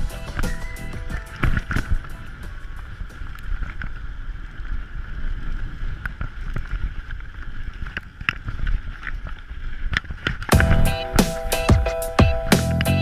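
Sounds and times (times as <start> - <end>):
music: 0.0 - 3.3, 10.5 - 13.0
bike clicks and rattles: 0.0 - 11.6
wind rumbling on microphone: 0.0 - 11.6.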